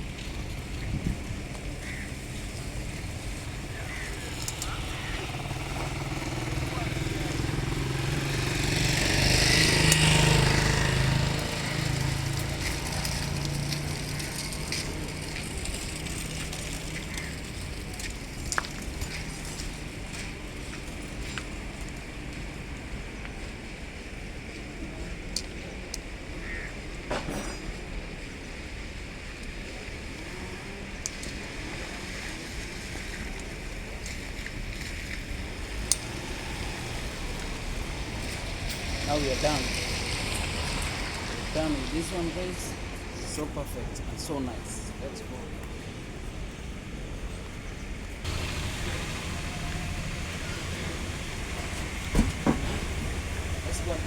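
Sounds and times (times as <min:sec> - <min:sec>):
wind rumbling on microphone: 0:00.0 - 0:06.6
rushing noise with low rumble: 0:45.7 - 0:54.0.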